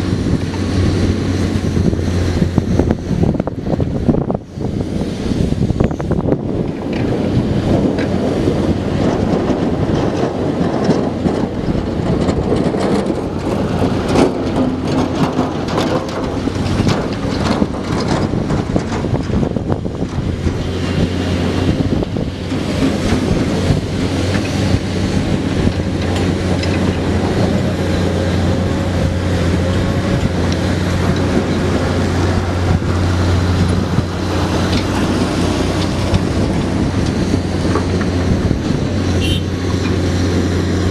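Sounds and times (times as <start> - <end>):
excavator diesel engine humming: 0.0 - 40.9
gravel rattling and clattering: 0.0 - 40.9
wind buffeting microphone: 0.0 - 40.9.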